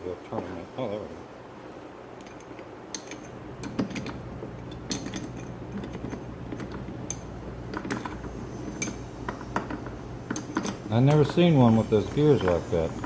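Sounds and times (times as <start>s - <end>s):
steady low hum: 0.0s - 13.0s
metal vise parts clinking: 2.2s - 13.0s.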